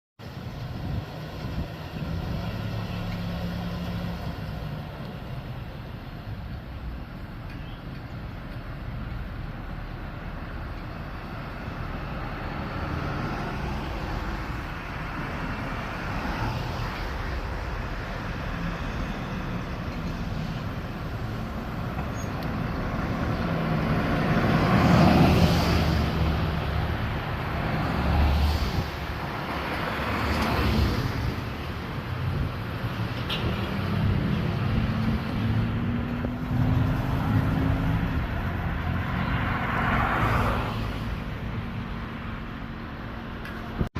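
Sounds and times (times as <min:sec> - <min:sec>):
fire trucks driving past: 0:00.2 - 0:43.9
whooshes of passing vehicles: 0:09.6 - 0:43.9.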